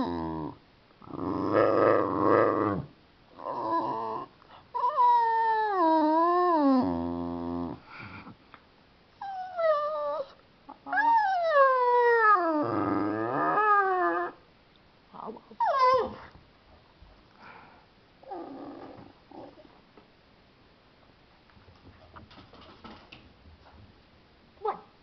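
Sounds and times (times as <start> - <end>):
dog grumbles: 0.0 - 4.3, 12.4 - 14.4, 18.2 - 19.7
dog howling whines: 3.4 - 7.6, 9.2 - 14.4.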